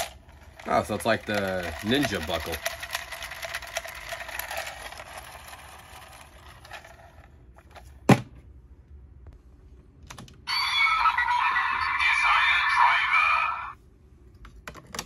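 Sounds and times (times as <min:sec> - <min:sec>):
toy electronic sound effect: 0:10.5 - 0:13.8.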